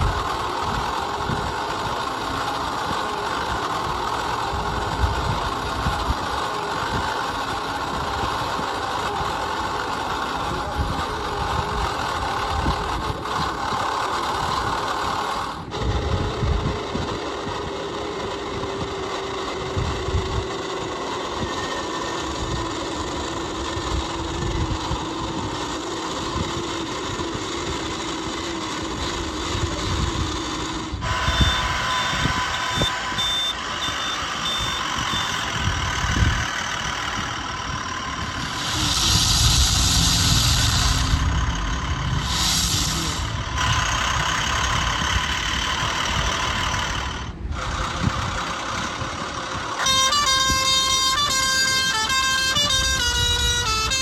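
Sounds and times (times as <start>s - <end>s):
truck engine noise: 0.0s - 54.0s
horn-like held tones: 31.0s - 47.2s, 49.8s - 54.0s
stepped electronic tones: 31.2s - 35.6s.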